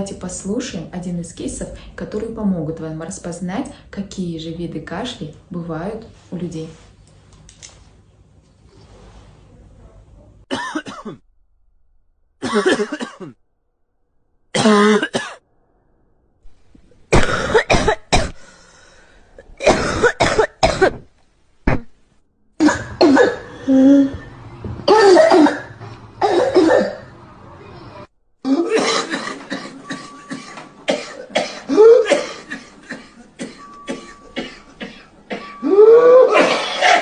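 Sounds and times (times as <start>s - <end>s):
person coughing: 10.5s - 11.2s, 12.4s - 13.4s, 14.6s - 15.4s, 17.1s - 18.4s, 19.6s - 21.1s, 22.6s - 24.2s, 24.9s - 27.0s, 28.4s - 37.0s.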